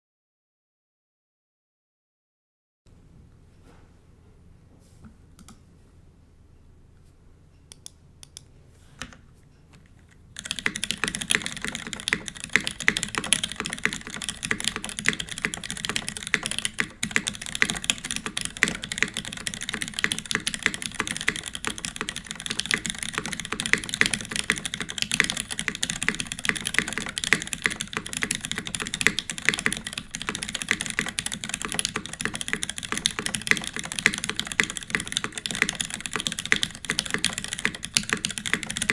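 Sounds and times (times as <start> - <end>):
typing on mechanical keyboard: 10.4 - 38.9.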